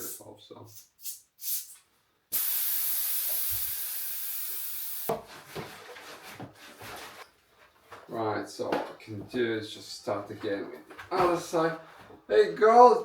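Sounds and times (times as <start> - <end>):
air hissing from tyre valve: 2.3 - 5.1.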